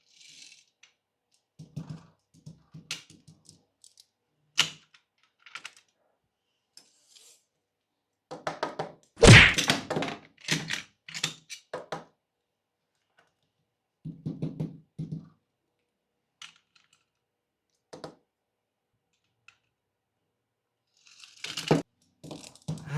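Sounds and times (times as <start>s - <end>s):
loud thunk: 9.2s - 9.6s.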